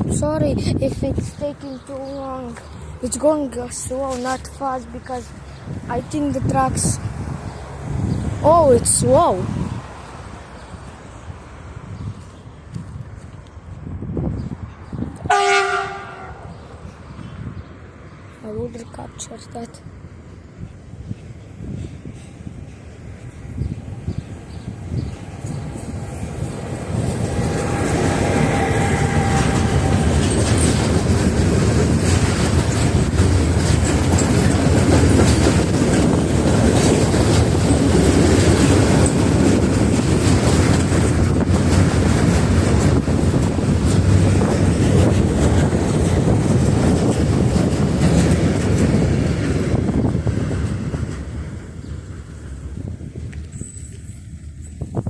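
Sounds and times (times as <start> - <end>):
train wheels rumbling on rails: 0.0 - 55.0
clickety-clack of rail joints: 20.6 - 55.0.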